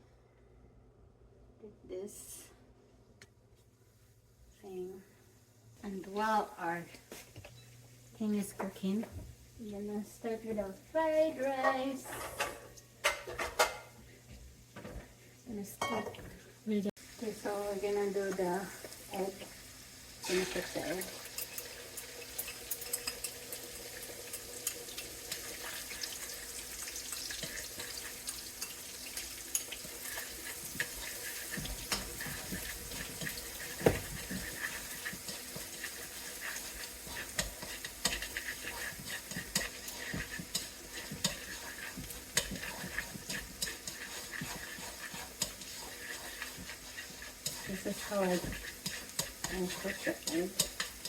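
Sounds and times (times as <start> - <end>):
food sizzling in hot oil: 16.9 - 51.0
utensil stirring and clicking on pan: 20.2 - 51.0.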